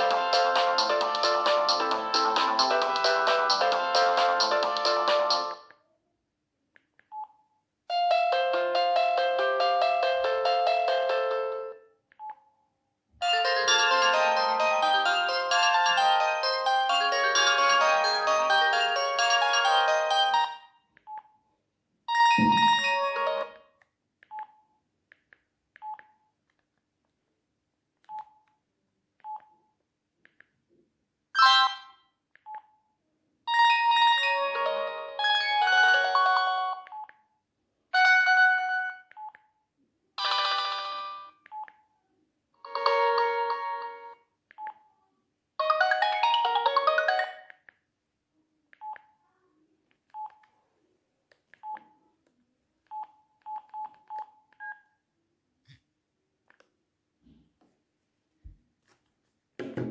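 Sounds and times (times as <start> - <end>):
electronic ringtone melody: 0.0 - 5.6, 13.2 - 20.7, 22.1 - 23.6, 33.5 - 36.8, 45.6 - 47.6
phone key beeps: 29.2 - 29.6, 48.8 - 49.1, 50.1 - 50.5, 52.9 - 54.9.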